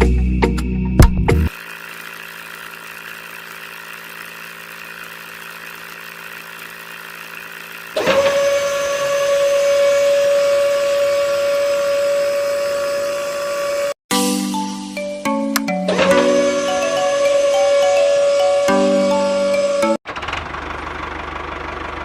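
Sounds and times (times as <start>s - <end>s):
high-pitched motor whine: 1.5s - 14.0s, 15.9s - 20.0s
small electric motor humming: 1.5s - 14.0s, 15.9s - 20.0s.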